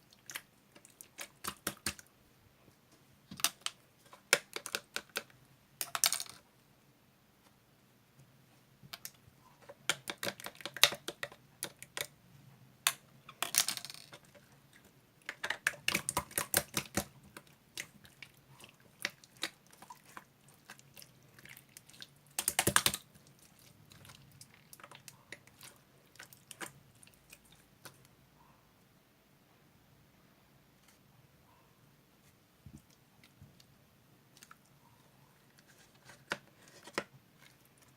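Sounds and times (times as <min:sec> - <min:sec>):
sharp clicks and taps: 0:22.4 - 0:23.0.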